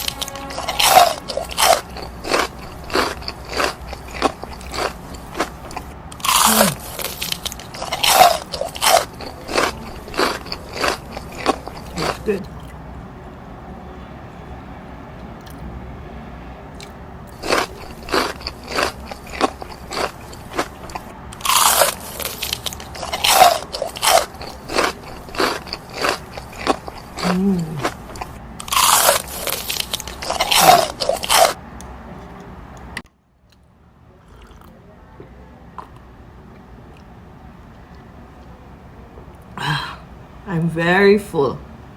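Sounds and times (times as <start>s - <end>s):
crunchy chewing: 0.0s - 12.9s, 15.4s - 15.7s, 16.7s - 33.6s, 34.2s - 34.8s.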